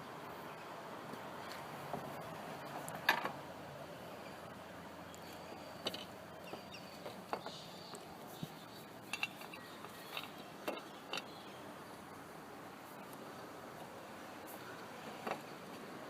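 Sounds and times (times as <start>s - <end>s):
metal tools clinking: 8.4s - 11.4s.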